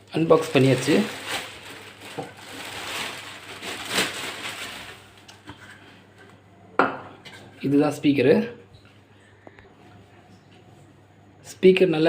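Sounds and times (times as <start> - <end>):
packaging rustling and crinkling: 0.2 - 5.5.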